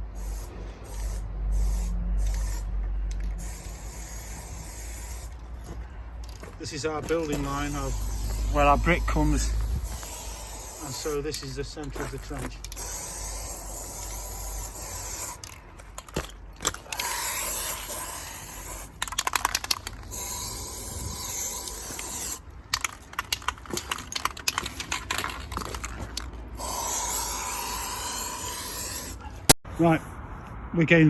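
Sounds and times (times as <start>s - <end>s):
aerosol paint spraying: 0.0s - 26.0s, 26.6s - 29.3s
rapid rattling clicks: 18.0s - 27.1s.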